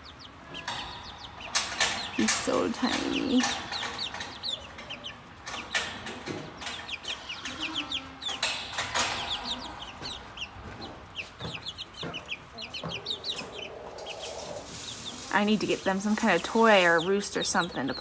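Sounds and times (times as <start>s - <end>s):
chicks peeping: 0.0s - 18.0s
clicks and rustles: 0.5s - 16.9s.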